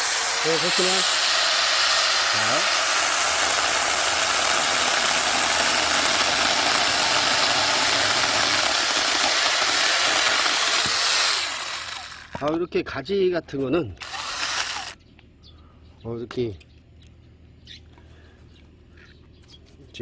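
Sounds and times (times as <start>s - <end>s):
cordless chainsaw cutting branch: 0.0s - 12.5s, 14.0s - 15.0s.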